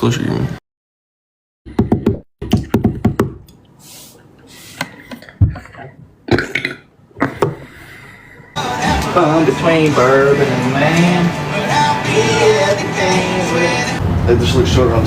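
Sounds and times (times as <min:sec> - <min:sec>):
man burping: 0:06.3 - 0:07.4.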